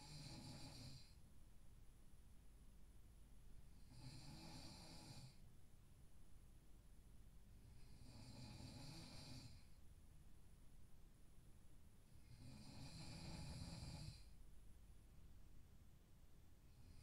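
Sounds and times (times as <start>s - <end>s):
person snoring: 0.0s - 1.1s, 3.9s - 5.4s, 7.9s - 9.7s, 12.2s - 14.3s.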